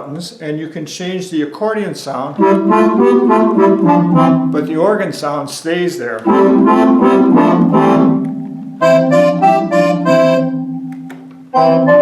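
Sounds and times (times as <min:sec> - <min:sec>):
low organ tone: 0:02.3 - 0:05.0, 0:06.2 - 0:12.0
accordion chords: 0:02.3 - 0:05.2, 0:06.2 - 0:12.0.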